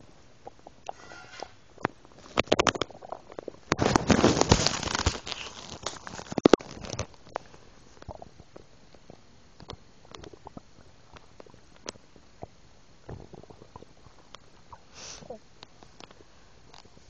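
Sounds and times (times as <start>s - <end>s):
stomach gurgling: 0.0s - 17.0s.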